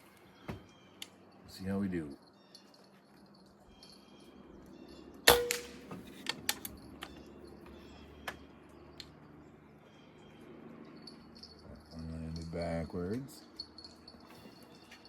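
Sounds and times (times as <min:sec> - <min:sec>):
air rifle shot: 0:05.3 - 0:06.0.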